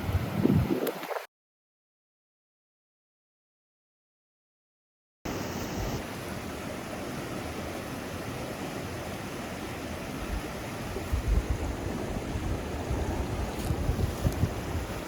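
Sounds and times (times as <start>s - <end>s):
wind buffeting microphone: 0.0s - 1.3s, 10.2s - 15.0s
river water rushing: 5.3s - 15.0s.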